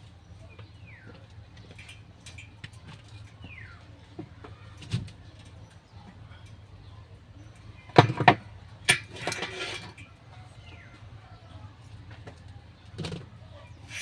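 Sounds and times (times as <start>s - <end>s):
metal knocks and clanks: 7.9s - 10.1s.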